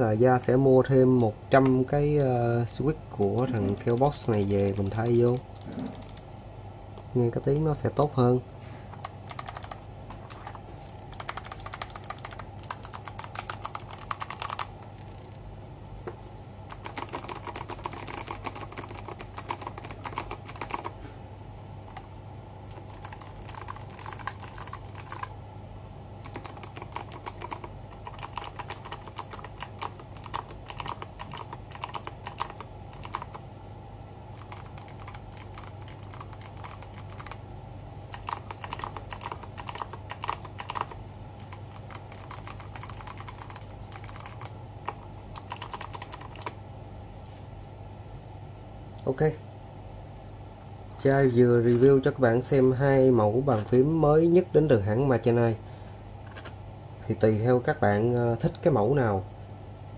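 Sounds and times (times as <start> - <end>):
mechanical keyboard typing: 3.2 - 6.3, 9.0 - 14.7, 16.7 - 21.0, 22.7 - 25.3, 26.2 - 33.4, 34.4 - 37.4, 38.1 - 46.6.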